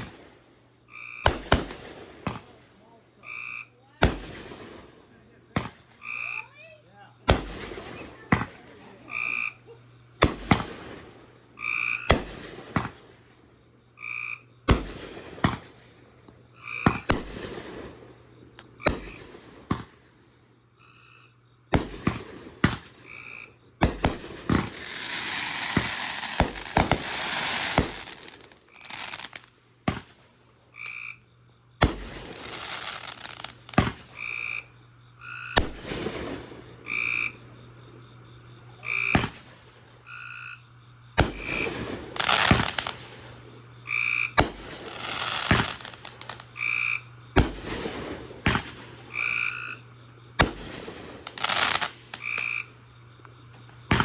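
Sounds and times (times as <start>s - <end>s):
fireworks bangs: 0.0s - 0.5s, 1.2s - 3.0s, 4.0s - 6.1s, 7.2s - 8.8s, 10.2s - 11.4s, 12.1s - 13.4s, 14.7s - 16.1s, 16.8s - 18.2s, 18.8s - 20.1s, 21.7s - 23.2s, 23.8s - 30.3s, 31.8s - 34.2s, 35.6s - 36.8s, 39.1s - 39.9s, 41.2s - 43.6s, 44.3s - 46.6s, 47.3s - 49.1s, 50.4s - 52.5s, 53.6s - 54.0s
fireworks hissing crackle: 0.0s - 3.0s, 10.2s - 11.5s, 23.8s - 30.4s, 31.8s - 34.2s, 41.2s - 43.6s, 44.4s - 46.6s, 50.4s - 52.5s.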